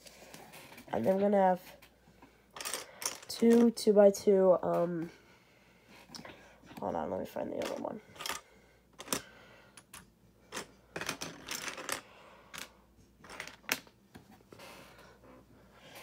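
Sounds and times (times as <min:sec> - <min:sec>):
plastic toy bricks clattering: 0:02.6 - 0:03.7, 0:10.5 - 0:12.0.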